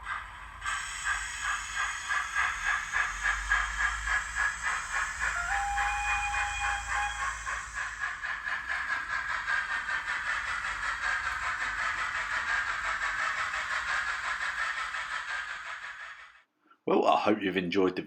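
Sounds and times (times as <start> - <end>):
steam locomotive exhaust chuffs: 0.0 - 16.5
steam locomotive whistle: 4.7 - 8.0.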